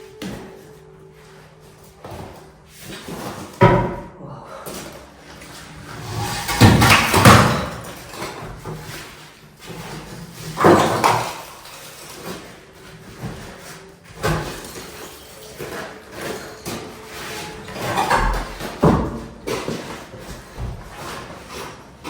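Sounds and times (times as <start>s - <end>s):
demolition knocks and clatter: 4.7s - 22.0s.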